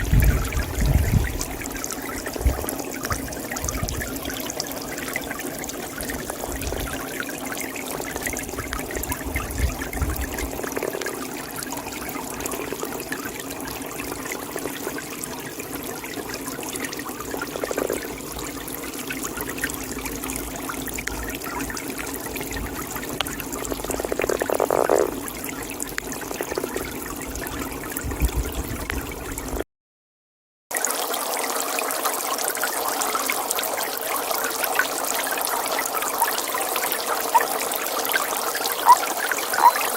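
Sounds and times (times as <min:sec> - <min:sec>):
trickling water: 0:00.0 - 0:29.6, 0:30.7 - 0:39.9
toad calling: 0:17.2 - 0:18.3, 0:23.0 - 0:25.2, 0:36.2 - 0:39.9.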